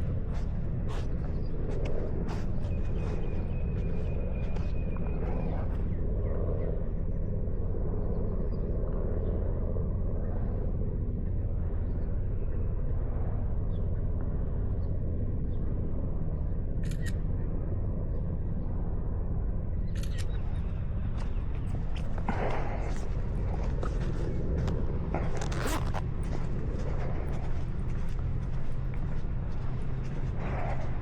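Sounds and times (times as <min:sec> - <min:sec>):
motorcycle engine rumble: 0:21.2 - 0:31.0.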